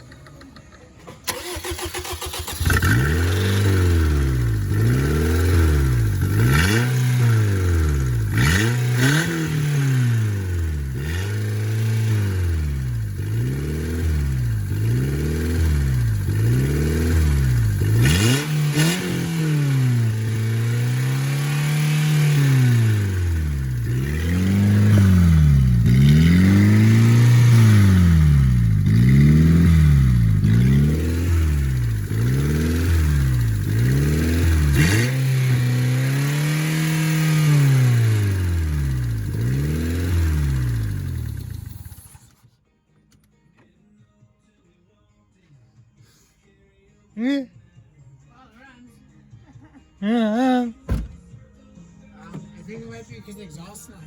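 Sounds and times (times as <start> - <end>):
car engine revving: 1.3 - 42.2.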